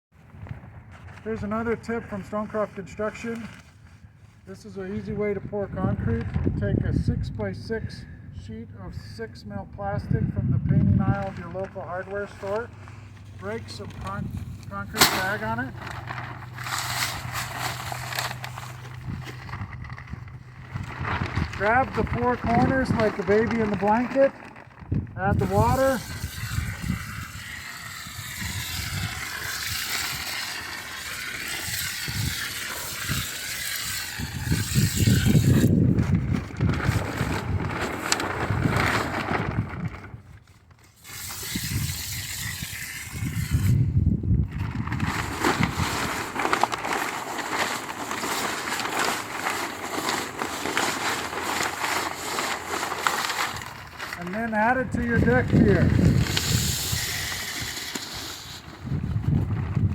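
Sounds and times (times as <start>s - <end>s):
plastic sheet rustling: 0.2s - 6.6s, 10.6s - 59.9s
water pouring onto concrete mix: 25.5s - 35.6s.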